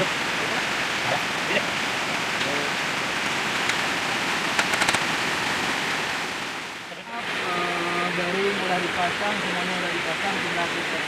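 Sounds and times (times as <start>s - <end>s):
rushing flowing water: 0.0s - 11.0s
sharp clicks: 4.5s - 5.0s.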